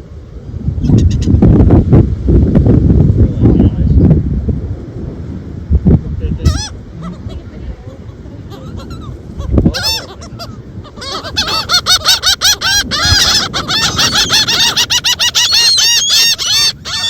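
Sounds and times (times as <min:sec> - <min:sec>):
gulls squawking: 0:06.5 - 0:17.0.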